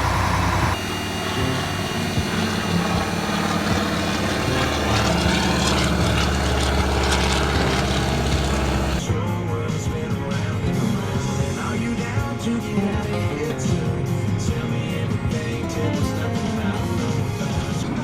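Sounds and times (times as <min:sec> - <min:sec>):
heavy vehicle engine running: 0:00.0 - 0:09.0.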